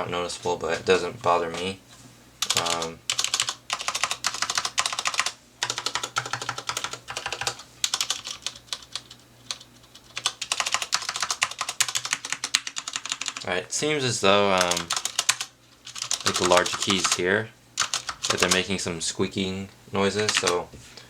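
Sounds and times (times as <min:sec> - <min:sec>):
mechanical keyboard typing: 0:02.4 - 0:13.4, 0:14.6 - 0:17.2, 0:17.8 - 0:18.7, 0:20.2 - 0:20.6.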